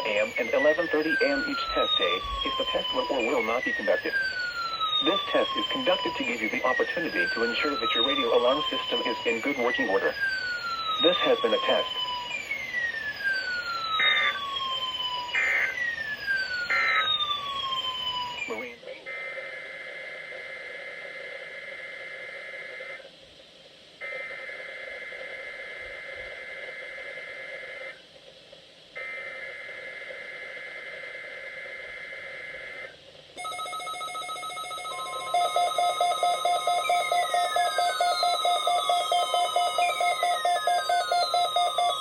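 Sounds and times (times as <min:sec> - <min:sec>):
weather radio alert alarms: 0:00.0 - 0:19.7, 0:31.7 - 0:42.0.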